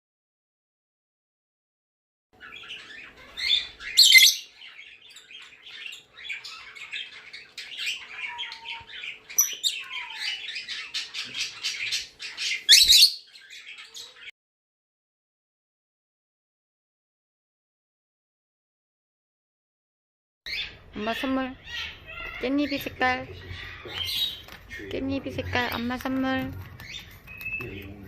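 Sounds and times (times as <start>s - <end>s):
lovebirds chattering: 2.4s - 14.3s, 20.5s - 28.0s
shrill bird squawks: 2.4s - 14.3s.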